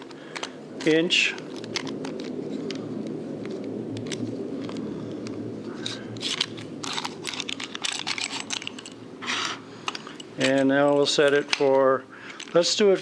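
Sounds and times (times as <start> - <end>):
steady low hum: 0.0 - 13.0
short scraping rustles: 9.2 - 10.5.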